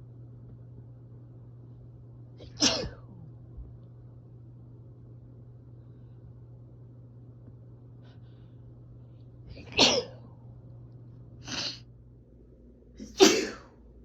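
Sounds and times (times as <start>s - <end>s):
woman sneezing: 2.4s - 3.1s, 9.6s - 10.2s, 13.0s - 13.7s.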